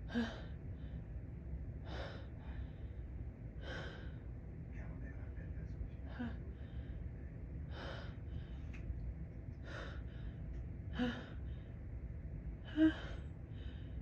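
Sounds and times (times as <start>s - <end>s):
woman gasping breaths: 0.0s - 1.0s, 1.8s - 2.9s, 3.6s - 4.2s, 7.7s - 8.6s, 9.6s - 11.8s, 12.6s - 14.0s.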